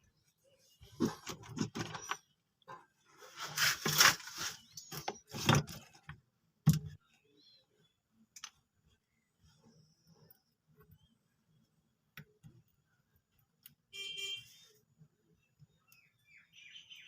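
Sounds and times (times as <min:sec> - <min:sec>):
hands scraping on cable: 0:00.8 - 0:06.1.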